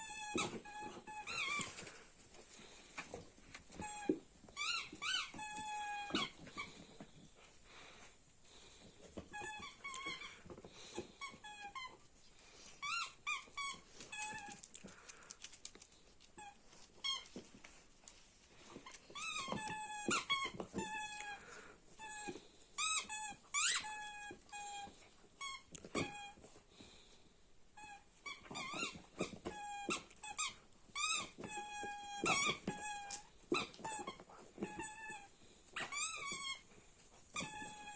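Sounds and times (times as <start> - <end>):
squeaky ball squeaking: 0.0 - 2.0, 3.1 - 7.2, 9.0 - 12.1, 12.8 - 14.6, 16.4 - 17.5, 18.8 - 26.5, 27.8 - 37.9.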